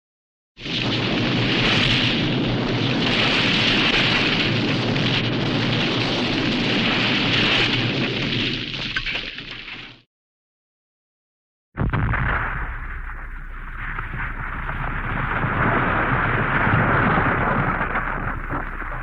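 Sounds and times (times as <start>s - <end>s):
avalanche rushing rumble: 0.6s - 8.6s, 11.9s - 19.0s.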